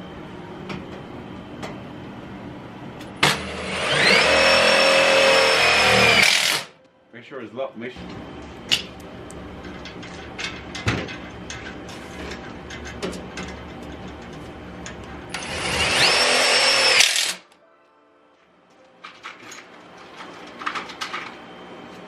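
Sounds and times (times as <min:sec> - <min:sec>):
high-pitched tool whine: 0:03.2 - 0:06.8, 0:15.3 - 0:17.4
power tool running: 0:03.2 - 0:06.8, 0:15.3 - 0:17.5.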